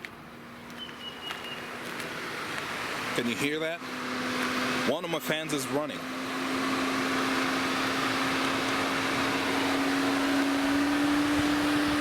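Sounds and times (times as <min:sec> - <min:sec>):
electric cooling fan humming: 0:06.0 - 0:12.0.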